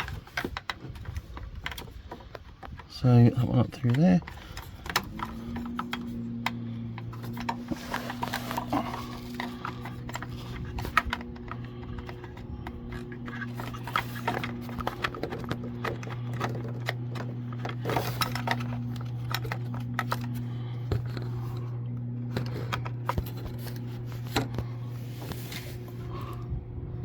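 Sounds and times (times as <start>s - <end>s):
plastic parts clicking and tapping: 0.0s - 25.4s
steady low hum: 0.0s - 27.0s.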